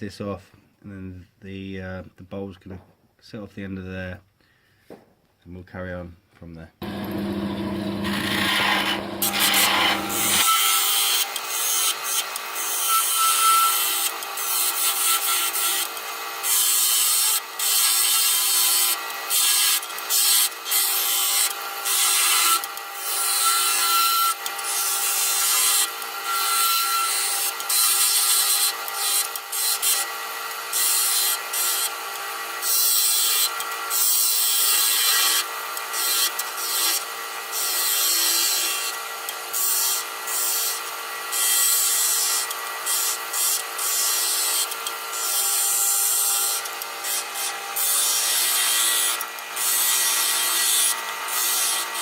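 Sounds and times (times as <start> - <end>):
wood lathe humming: 6.8 - 10.5
turning tool scraping wood: 6.8 - 10.6.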